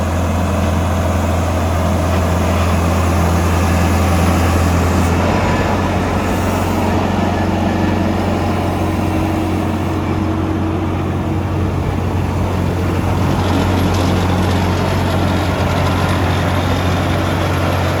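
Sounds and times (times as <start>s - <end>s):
diesel engine running: 0.0s - 18.0s.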